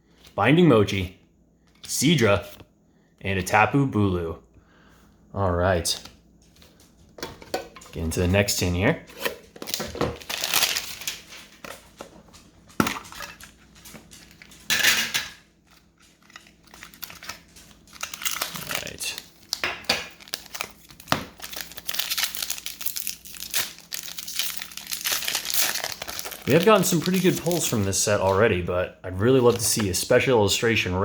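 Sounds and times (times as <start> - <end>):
plastic wrapping crinkling and tearing: 9.5 - 12.0, 13.0 - 14.7, 15.6 - 28.5, 29.2 - 30.0.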